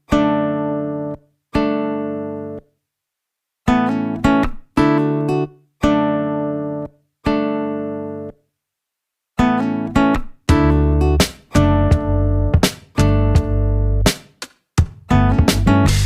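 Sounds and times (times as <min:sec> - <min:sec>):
plucked guitar chords: 0:00.0 - 0:02.7, 0:03.7 - 0:08.4, 0:09.4 - 0:14.2, 0:14.8 - 0:16.0.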